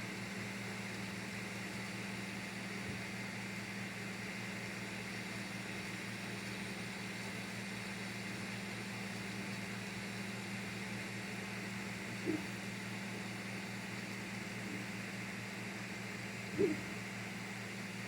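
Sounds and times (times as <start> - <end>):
printer fans humming: 0.0 - 18.0.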